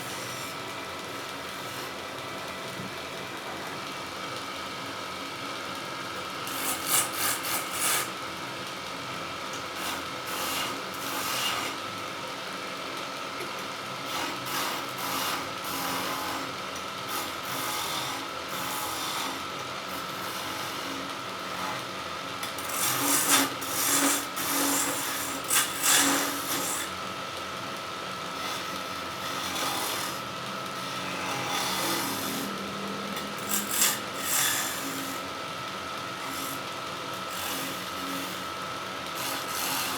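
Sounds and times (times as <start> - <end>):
turning tool scraping wood: 22.6 - 26.9, 33.4 - 35.2, 39.2 - 39.9
wood lathe whining: 22.6 - 27.1, 28.2 - 35.4, 36.1 - 39.9.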